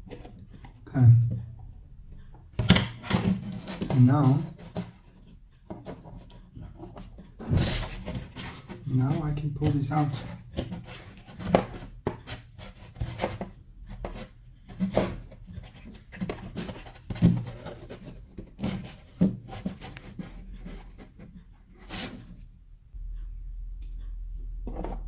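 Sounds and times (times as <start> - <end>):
plastic parts clicking and tapping: 0.0 - 8.8
plastic scraping: 0.0 - 25.0.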